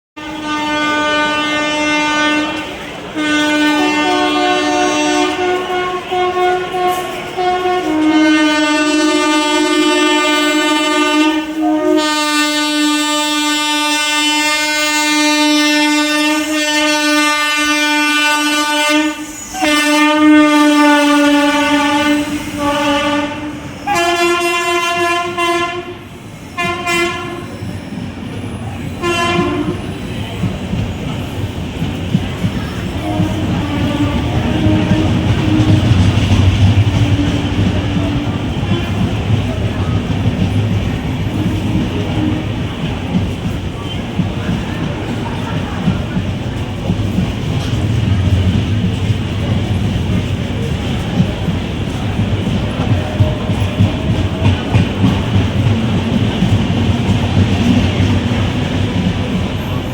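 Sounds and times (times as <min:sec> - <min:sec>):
locomotive horn blaring: 0:00.2 - 0:27.6, 0:29.0 - 0:29.9, 0:32.8 - 0:39.4, 0:41.3 - 0:42.8.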